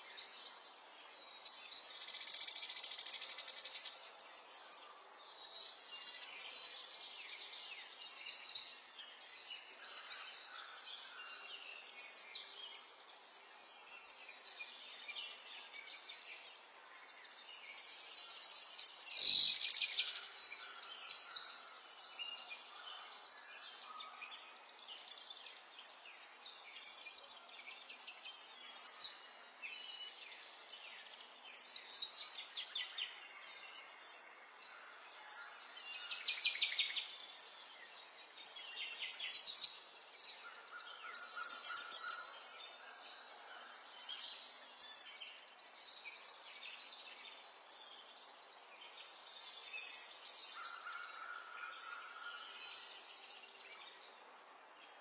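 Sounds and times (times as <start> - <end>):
songbirds trilling: 35.1 - 45.4.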